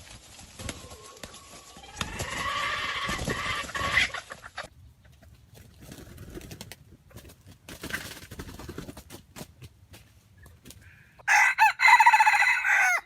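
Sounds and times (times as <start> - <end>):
rooster crowing: 11.2 - 13.0.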